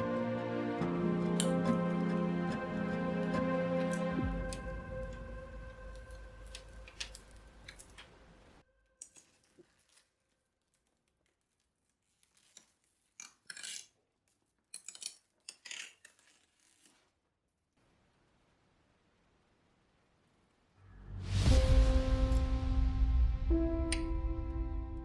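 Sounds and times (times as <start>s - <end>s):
background music: 0.0s - 7.8s, 20.9s - 25.0s.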